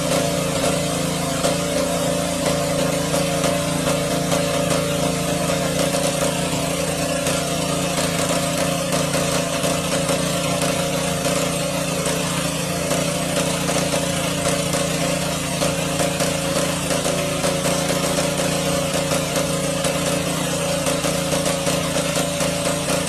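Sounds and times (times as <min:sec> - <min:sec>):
small engine running steadily: 0:00.0 - 0:23.0.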